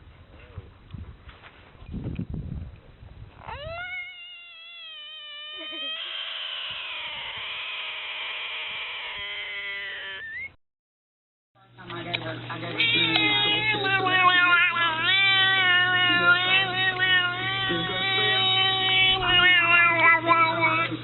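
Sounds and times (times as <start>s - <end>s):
animal high-pitched call: 3.4s - 10.6s.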